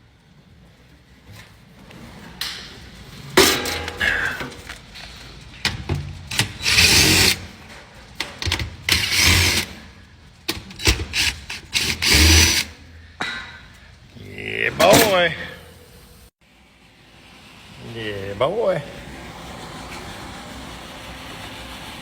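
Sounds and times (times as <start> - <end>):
power tool running in bursts: 6.3 - 7.5, 8.9 - 9.8, 10.8 - 12.8.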